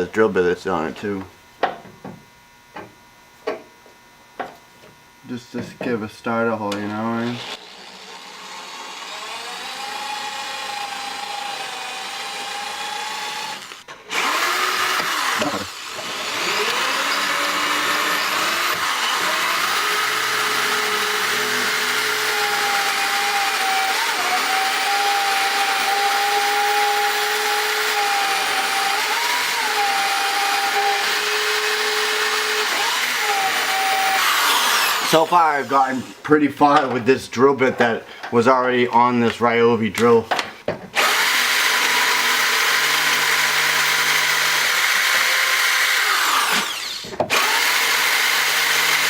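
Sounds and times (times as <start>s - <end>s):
drill whining: 6.9s - 36.3s, 41.0s - 49.0s.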